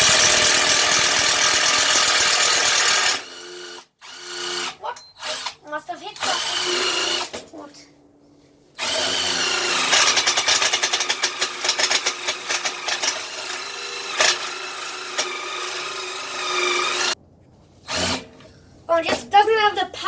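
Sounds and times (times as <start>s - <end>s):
impact driver whining and hammering: 0.0s - 5.6s, 6.2s - 7.5s, 8.8s - 17.2s, 17.9s - 18.5s.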